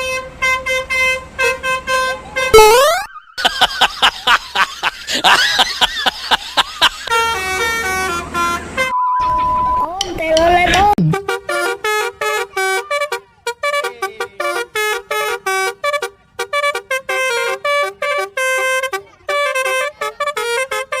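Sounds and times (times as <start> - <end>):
bus horn playing a tune: 0.0 - 3.0, 6.8 - 9.1, 11.0 - 21.0.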